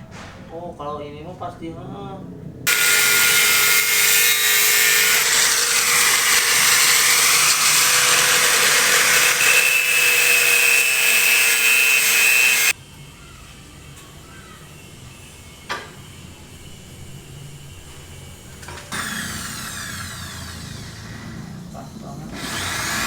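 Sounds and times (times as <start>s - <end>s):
power tool cutting: 2.7s - 12.8s, 22.3s - 23.0s.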